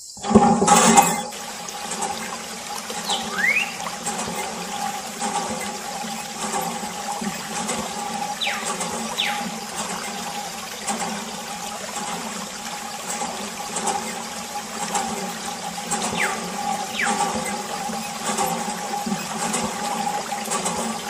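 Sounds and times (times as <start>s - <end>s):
rushing water: 0.2s - 21.0s
high falling whistles: 0.8s - 1.3s, 3.1s - 3.8s.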